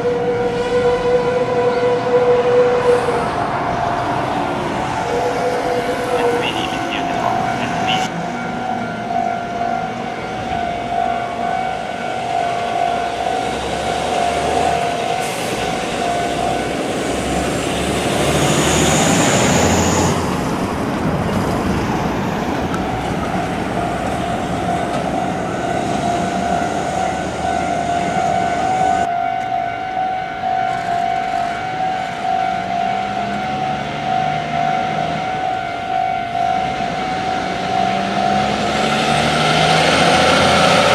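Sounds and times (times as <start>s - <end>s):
truck engine rumble: 2.5s - 29.1s
level crossing warning bell: 4.6s - 20.1s, 22.9s - 40.9s.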